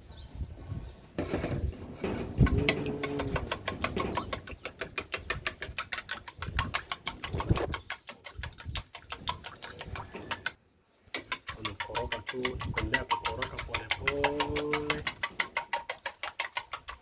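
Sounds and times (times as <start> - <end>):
spoon clicking against bowl: 11.4 - 16.9.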